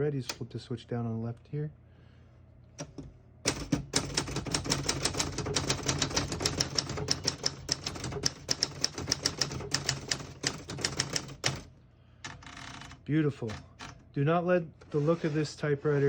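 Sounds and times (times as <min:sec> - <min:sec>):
typewriter keystroke clacks: 0:02.8 - 0:11.7.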